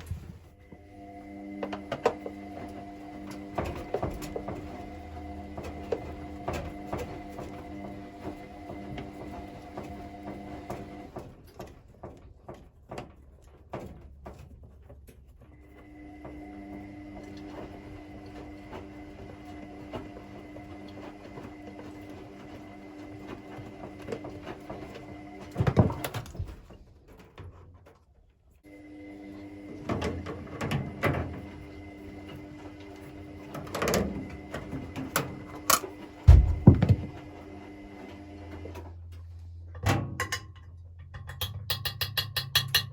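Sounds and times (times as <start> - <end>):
knocks and clicks of machine parts: 39.8 - 42.9.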